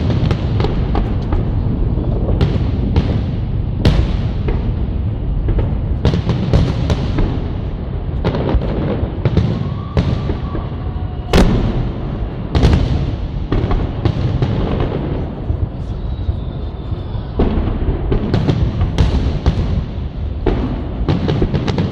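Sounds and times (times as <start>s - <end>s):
continuous low rumble: 0.0s - 9.3s
fireworks bursting bangs: 0.0s - 21.9s.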